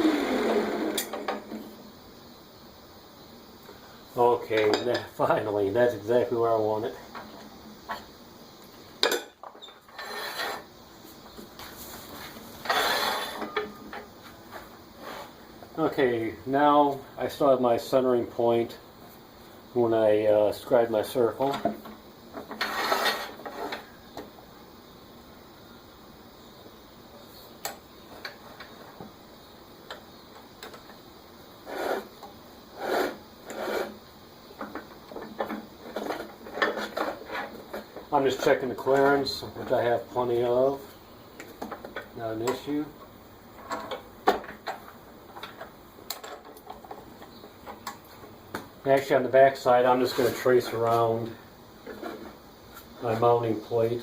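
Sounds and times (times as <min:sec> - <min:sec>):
short scraping sounds: 0:09.8 - 0:10.7, 0:11.6 - 0:13.6, 0:14.5 - 0:15.4, 0:22.5 - 0:23.9, 0:31.6 - 0:32.1, 0:32.8 - 0:34.0, 0:50.0 - 0:50.9
rubbing and scraping: 0:09.8 - 0:13.6, 0:14.4 - 0:15.4, 0:22.4 - 0:24.0, 0:31.6 - 0:34.0, 0:34.7 - 0:39.3, 0:49.9 - 0:51.2, 0:51.8 - 0:53.3.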